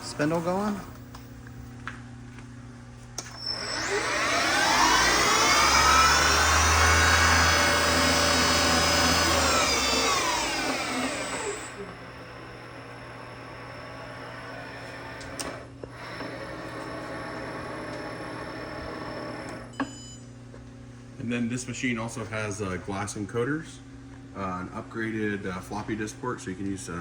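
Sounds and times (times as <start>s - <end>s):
mill spindle whining and spinning down: 0.0s - 1.7s, 3.2s - 20.0s
machine hum: 0.0s - 27.0s.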